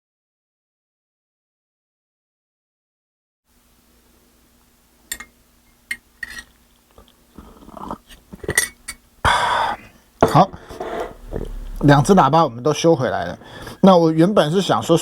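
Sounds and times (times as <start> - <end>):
faint steady hum: 3.5 - 15.0
scraping: 10.2 - 12.3.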